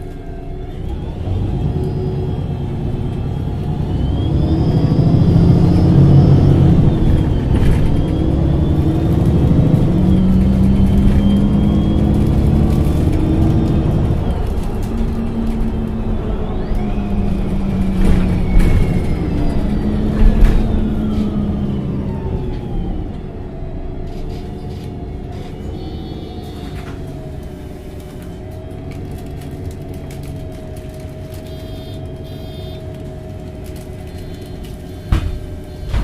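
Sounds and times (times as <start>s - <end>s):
bus engine whine: 0.0s - 36.0s
thump: 35.1s - 36.0s.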